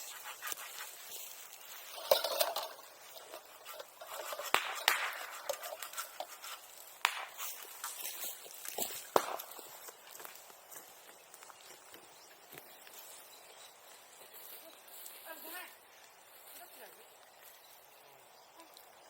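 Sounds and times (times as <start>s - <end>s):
bonfire crackling and hissing: 0.0s - 19.0s
sharp pops of fire: 4.3s - 6.0s, 6.8s - 8.1s, 8.7s - 10.4s.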